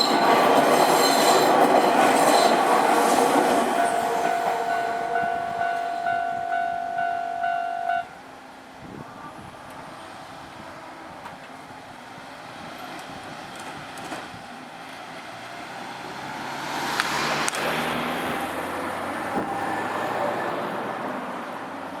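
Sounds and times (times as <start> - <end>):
level-crossing warning bell: 0.0 - 10.0.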